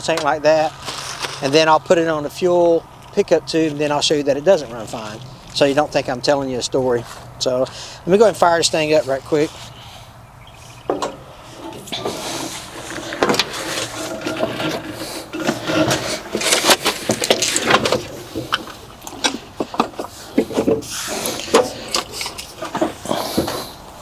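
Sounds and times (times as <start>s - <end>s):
things being handled: 0.0s - 1.6s, 10.9s - 24.0s.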